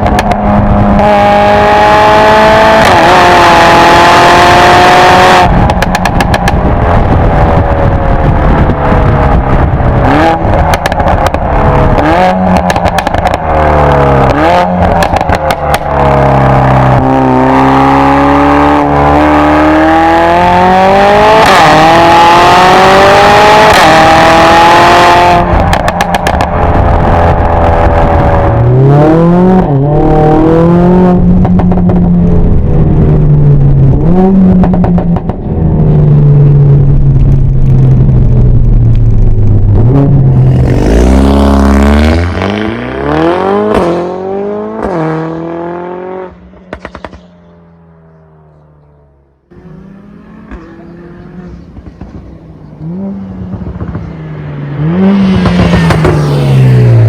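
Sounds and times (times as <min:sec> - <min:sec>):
exhaust pops and crackles: 0:00.0 - 0:00.9, 0:05.4 - 0:17.1, 0:25.4 - 0:28.7, 0:31.2 - 0:40.8, 0:46.5 - 0:47.5, 0:51.5 - 0:54.2
car engine revving: 0:00.0 - 0:57.0.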